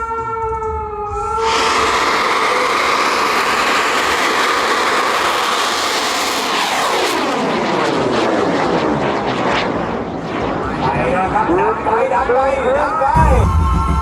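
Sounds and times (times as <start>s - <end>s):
rocket motor rushing: 1.4s - 11.0s.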